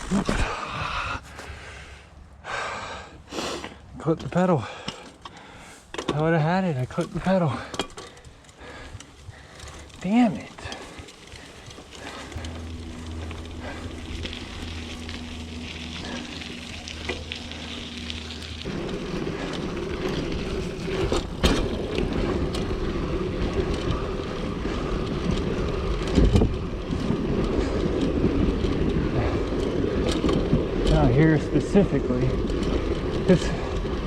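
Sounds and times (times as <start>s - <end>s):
bike tyres on gravel and mud: 0.0s - 34.0s
bike rattling and knocking: 4.0s - 34.0s
low steady hum: 8.6s - 33.8s.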